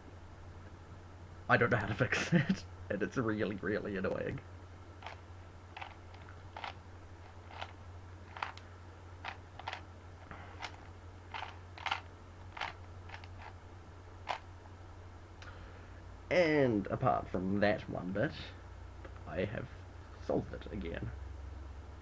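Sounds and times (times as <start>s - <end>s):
plastic puzzle cube clicking: 8.3s - 8.6s, 9.3s - 9.8s, 10.6s - 13.5s.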